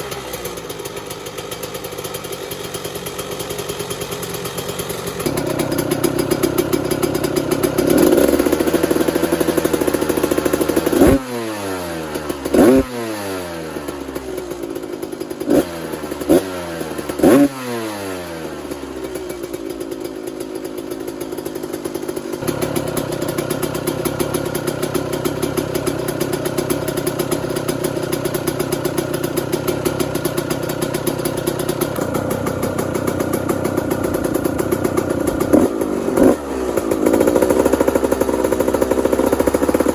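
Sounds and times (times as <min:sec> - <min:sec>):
two-stroke engine idling: 0:00.0 - 0:39.9.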